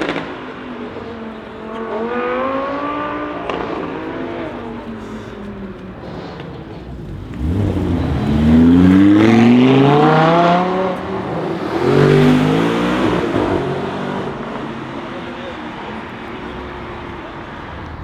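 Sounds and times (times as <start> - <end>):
sports car accelerating hard: 0.0 - 18.0.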